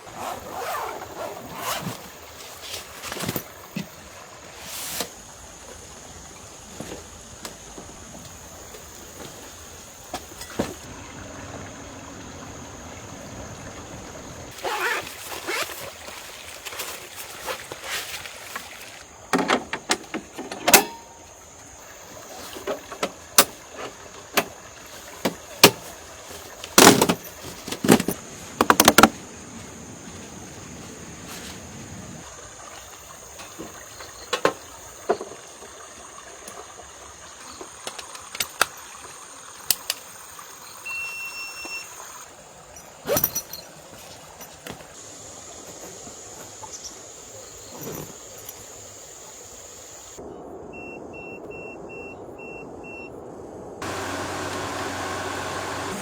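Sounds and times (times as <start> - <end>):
short electronic beeps: 40.9 - 42.0, 50.8 - 53.1.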